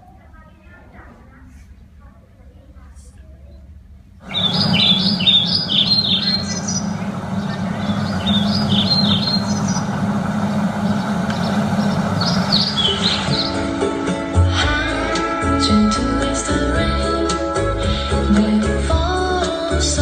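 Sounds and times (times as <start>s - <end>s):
steady hum and hiss: 0.0s - 20.0s
birds chirping: 0.1s - 16.8s.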